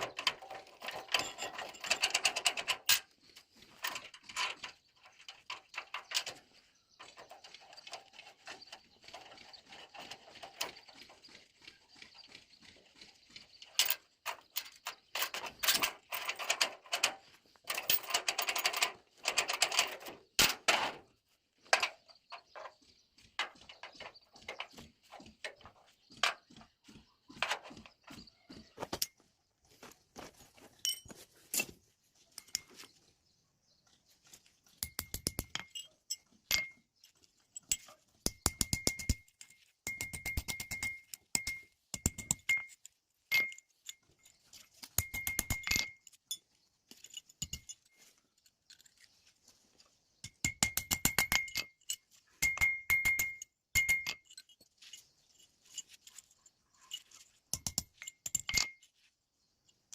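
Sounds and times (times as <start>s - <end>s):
metallic clicking and clinking: 0.0s - 11.1s, 13.6s - 21.1s, 30.8s - 32.9s, 34.7s - 49.2s, 50.2s - 59.0s.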